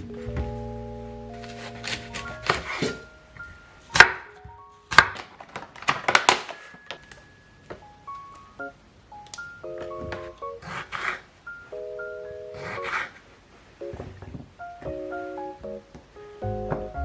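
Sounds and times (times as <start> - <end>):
light background music: 0.0 - 5.2, 6.7 - 13.1, 13.8 - 17.0
knife chopping vegetables: 1.4 - 3.0, 3.9 - 4.3.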